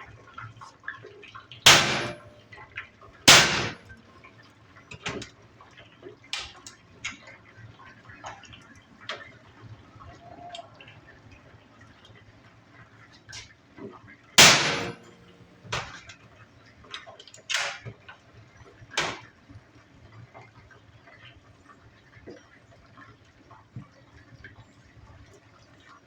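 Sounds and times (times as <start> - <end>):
loud sudden bang: 1.7 - 2.3, 3.3 - 3.8, 14.4 - 15.1
metallic knocks and clicks: 1.7 - 2.4, 3.3 - 3.9, 14.4 - 15.2.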